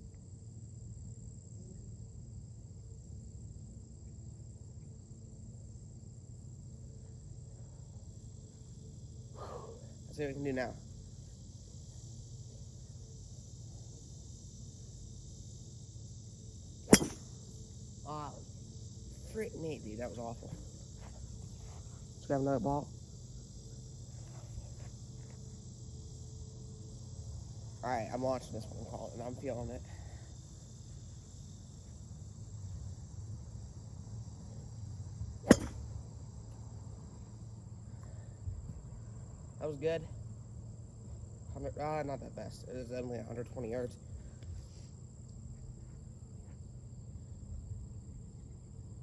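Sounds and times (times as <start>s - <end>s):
crickets chirping: 0.0s - 49.0s
high-pitched insect chorus: 0.0s - 49.0s
golf club striking ball: 16.9s - 17.3s, 35.4s - 36.0s.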